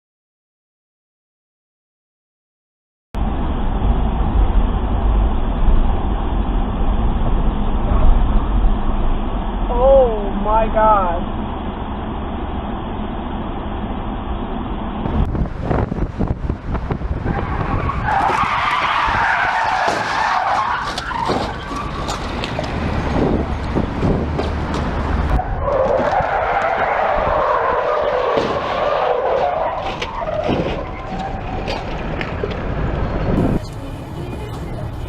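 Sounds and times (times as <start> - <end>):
road and engine noise: 3.2 - 35.0
car tyres skidding: 15.4 - 35.0.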